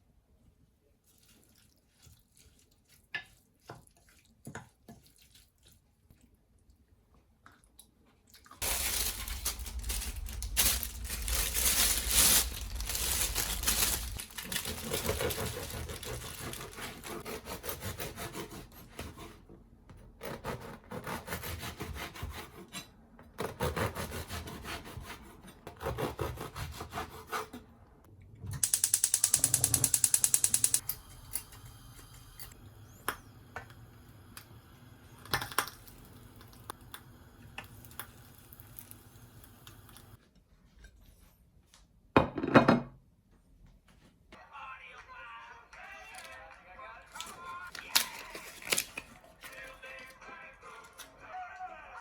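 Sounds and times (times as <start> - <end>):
fast buzzing rattle: 28.6 - 30.8.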